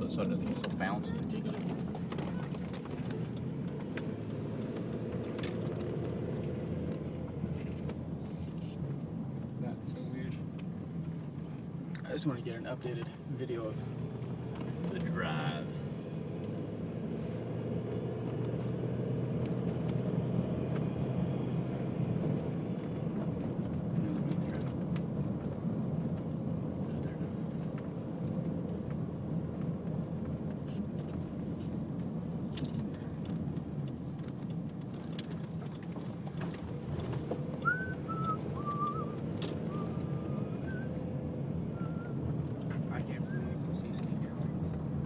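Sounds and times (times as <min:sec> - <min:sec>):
car engine hum: 0:00.0 - 0:45.0
road noise: 0:00.0 - 0:45.0
small clicks and rattles: 0:00.4 - 0:09.1, 0:22.1 - 0:38.0.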